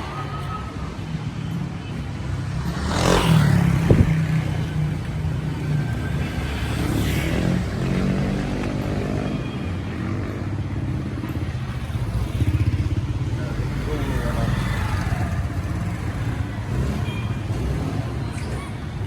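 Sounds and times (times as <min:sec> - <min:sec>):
motorcycle engine running: 0:10.7 - 0:18.3.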